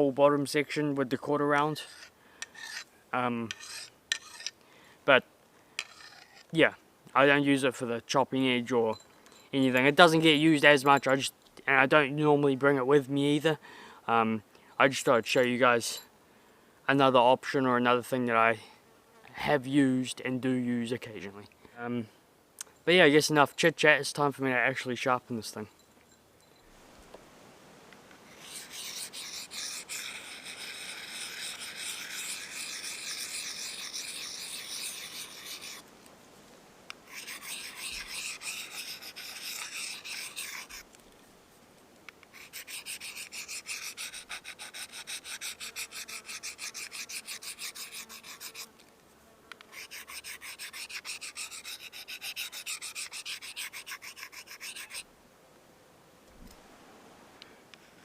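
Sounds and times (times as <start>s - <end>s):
knife scraping on sharpening stone: 1.7s - 2.9s, 3.5s - 4.6s, 5.8s - 6.5s, 28.3s - 35.8s, 37.1s - 40.8s, 42.4s - 48.7s, 49.7s - 55.0s.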